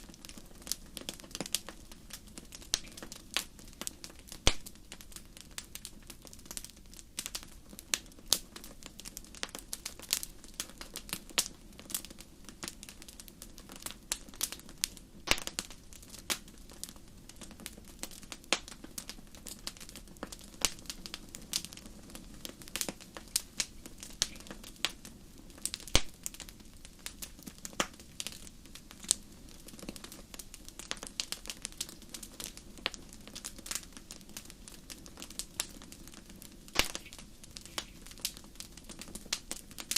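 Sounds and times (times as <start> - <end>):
bonfire crackling: 0.0 - 39.9
sharp pops: 15.3 - 15.5, 36.8 - 38.0.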